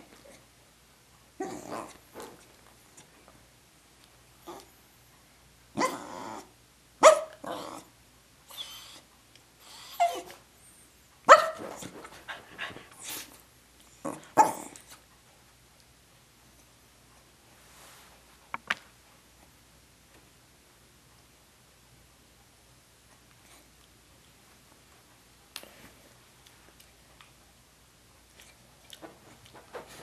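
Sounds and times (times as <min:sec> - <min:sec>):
dog yowling and barking: 0:05.8 - 0:07.8, 0:09.9 - 0:10.4, 0:14.4 - 0:14.8.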